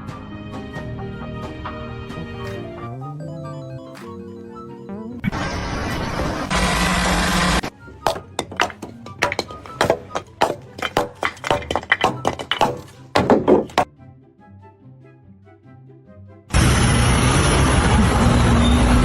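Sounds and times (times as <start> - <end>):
hard objects knocking and clinking: 8.1 - 13.9.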